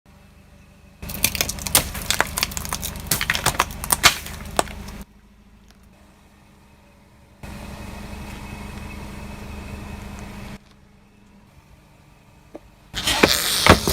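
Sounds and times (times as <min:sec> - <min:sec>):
bulldozer engine running: 0:00.1 - 0:13.9
wood cracking and snapping: 0:01.0 - 0:05.0
faint hum: 0:03.6 - 0:13.0.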